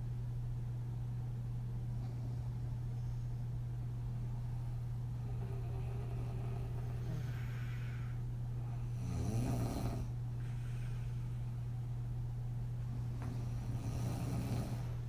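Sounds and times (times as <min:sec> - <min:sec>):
steady low hum: 0:00.0 - 0:15.0
soft puffing snore: 0:05.2 - 0:08.0, 0:13.2 - 0:15.0
woman breathing in sleep: 0:05.2 - 0:11.6, 0:13.2 - 0:15.0.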